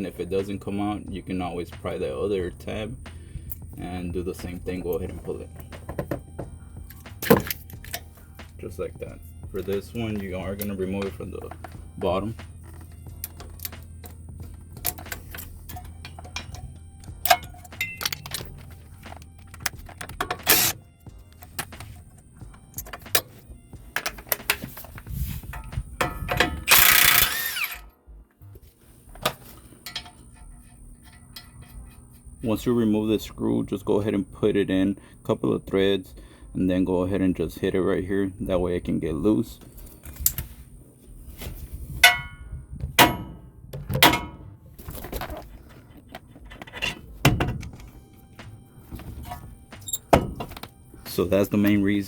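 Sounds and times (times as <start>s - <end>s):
metal tool rattles: 9.6s - 23.3s, 24.0s - 27.9s
socket wrench clicking: 25.6s - 27.8s
impact wrench burst: 26.4s - 27.9s
hammer striking steel: 42.0s - 44.5s.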